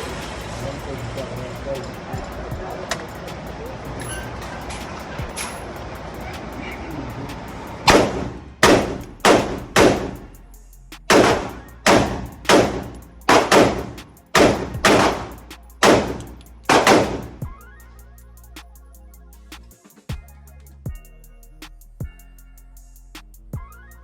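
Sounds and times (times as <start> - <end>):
background music: 0.0 - 24.0
gunshots: 7.9 - 10.3, 11.1 - 17.4.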